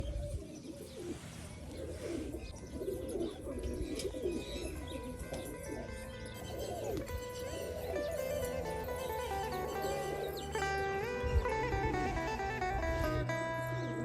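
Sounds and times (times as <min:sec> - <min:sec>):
pigeons cooing: 0:00.0 - 0:14.0.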